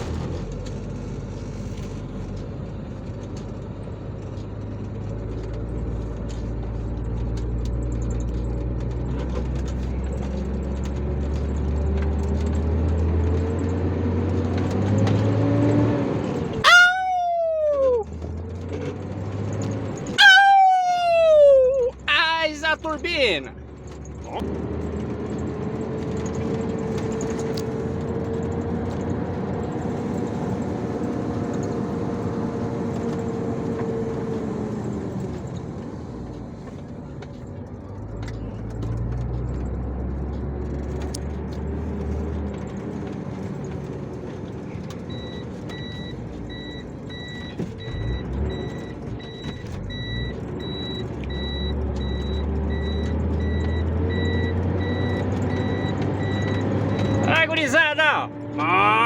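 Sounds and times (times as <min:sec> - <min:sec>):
reversing alarm beeping: 0:45.1 - 0:57.5.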